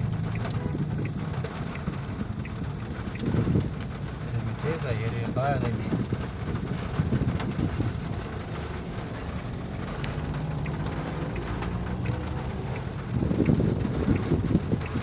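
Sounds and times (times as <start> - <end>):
wind buffeting microphone: 1.9 - 3.8, 5.8 - 15.0.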